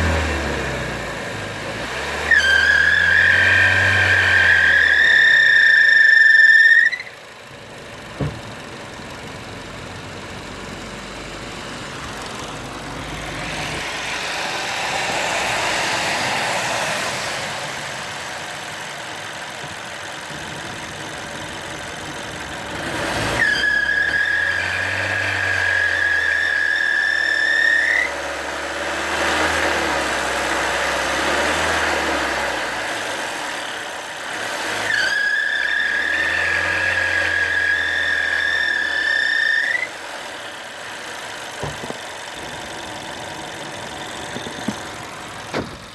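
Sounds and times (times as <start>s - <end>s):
high-pitched squeal from engine: 2.3s - 7.2s, 23.3s - 28.2s, 34.8s - 40.0s
car engine running: 7.0s - 23.5s, 39.9s - 45.9s.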